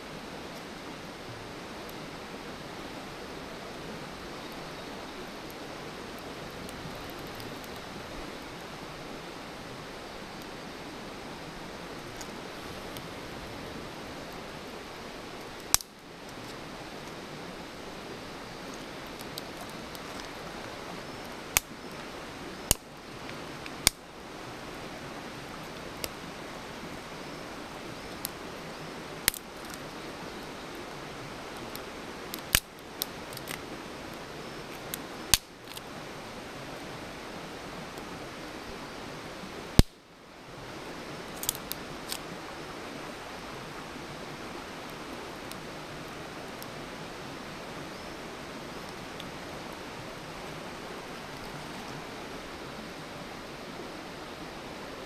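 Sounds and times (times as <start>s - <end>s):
campfire crackling: 0.0s - 55.0s
fire pops and snaps: 6.5s - 7.9s, 15.5s - 17.2s, 21.2s - 21.7s, 22.7s - 22.9s, 23.6s - 24.0s, 29.2s - 29.8s, 31.8s - 33.6s, 34.7s - 35.9s, 39.8s - 40.0s, 41.3s - 42.2s.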